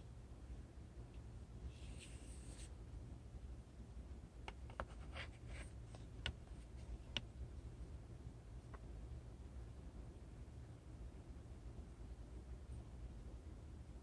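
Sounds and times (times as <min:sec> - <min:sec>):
steady low hum: 0:00.0 - 0:14.0
light clicks and scratches: 0:04.5 - 0:07.3.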